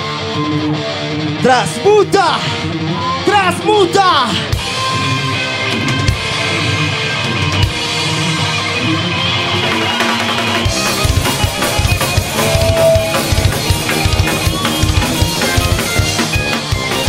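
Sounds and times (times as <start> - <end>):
live rock band playing: 0.0 - 17.0
drum kit beat: 9.6 - 17.0.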